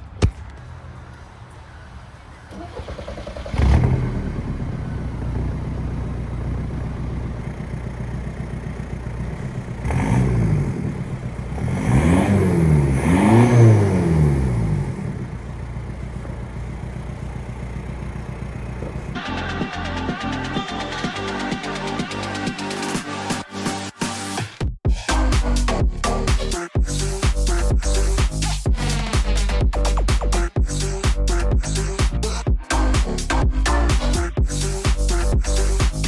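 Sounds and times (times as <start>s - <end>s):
car engine starting and revving: 2.3s - 19.5s.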